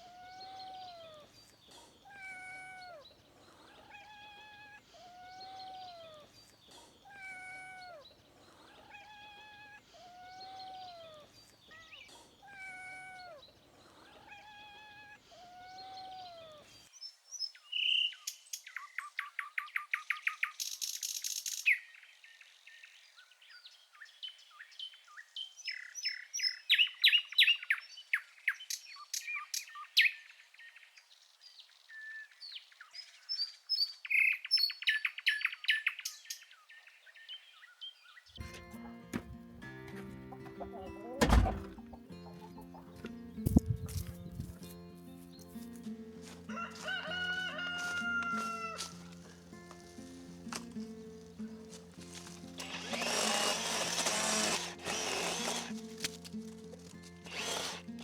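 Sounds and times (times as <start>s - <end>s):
songbirds trilling and chirping: 0.0s - 38.5s, 40.4s - 58.0s
cat meowing: 2.0s - 3.0s, 3.6s - 6.3s, 7.0s - 8.0s, 8.6s - 13.4s, 14.0s - 16.6s, 47.2s - 49.0s.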